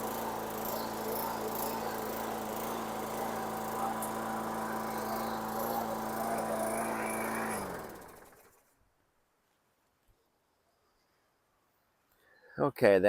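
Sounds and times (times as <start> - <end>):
lawn mower engine running: 0.0 - 8.7.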